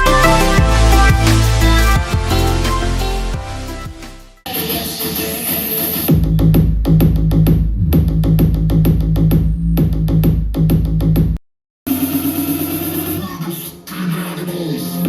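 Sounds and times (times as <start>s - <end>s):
electronic music with heavy bass: 0.0s - 11.4s.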